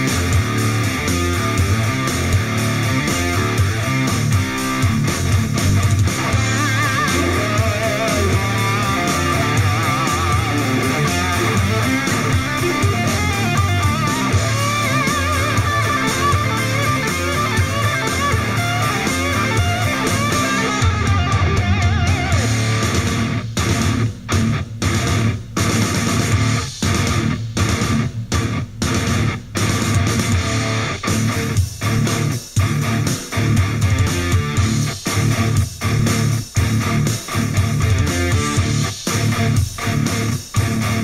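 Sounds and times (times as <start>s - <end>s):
rock music with electric guitar: 0.0s - 41.0s.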